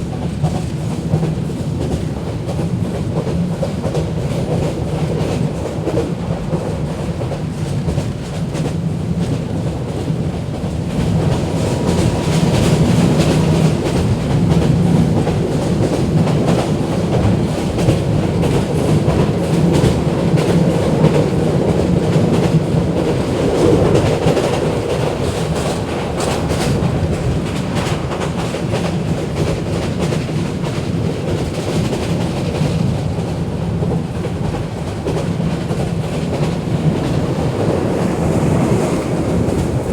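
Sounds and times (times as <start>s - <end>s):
train rumbling: 0.0s - 39.9s.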